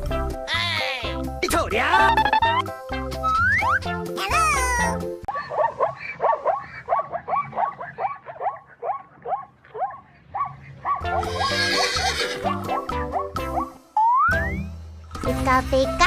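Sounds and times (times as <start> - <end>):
children's music: 0.0 - 5.2, 15.2 - 16.0.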